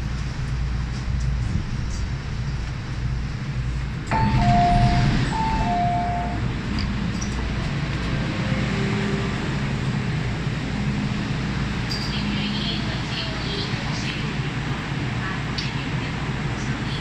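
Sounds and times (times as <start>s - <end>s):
train rumbling: 0.0s - 17.0s
two-note train chime: 4.1s - 6.5s.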